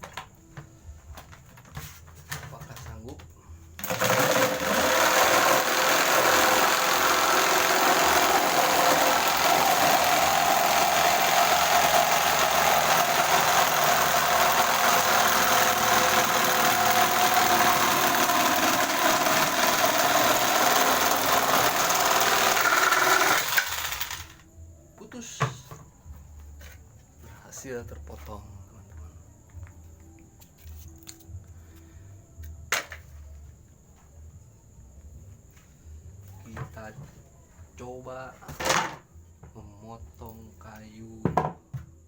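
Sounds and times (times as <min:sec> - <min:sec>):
electric jigsaw sawing plywood: 0:03.8 - 0:24.3.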